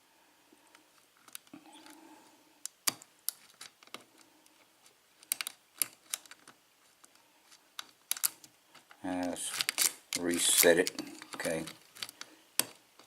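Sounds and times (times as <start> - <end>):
lock pick clicking on pins: 5.2 - 6.4, 7.8 - 8.5.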